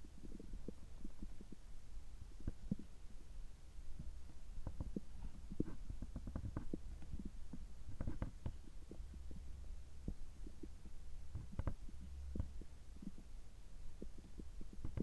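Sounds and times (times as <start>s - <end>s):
stomach gurgling: 0.1s - 1.7s, 10.0s - 13.4s, 14.0s - 15.0s.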